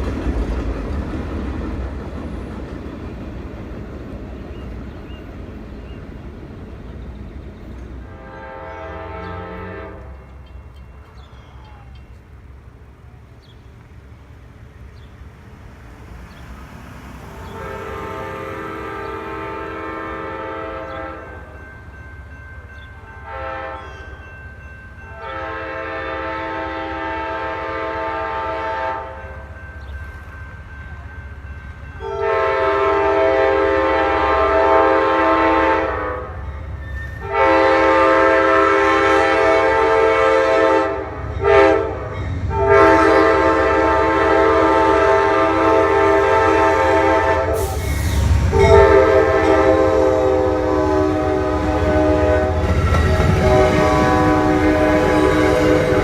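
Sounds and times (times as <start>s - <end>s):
train rumble: 0.0s - 56.0s
train air horn blasts: 8.0s - 10.5s, 17.2s - 21.6s, 23.2s - 24.1s, 25.1s - 29.4s, 32.0s - 56.0s.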